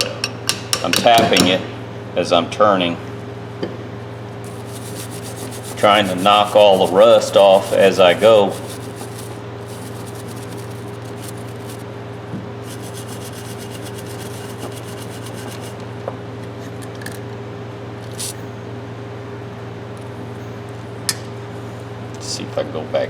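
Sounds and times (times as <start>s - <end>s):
wrench screw scraping: 4.5s - 11.8s, 12.6s - 15.8s, 18.1s - 18.4s.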